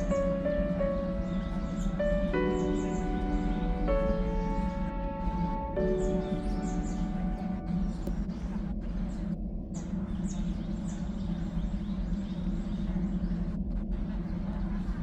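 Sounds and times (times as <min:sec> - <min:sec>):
small birds chirping: 0:00.0 - 0:08.5
low background hum: 0:00.0 - 0:15.0.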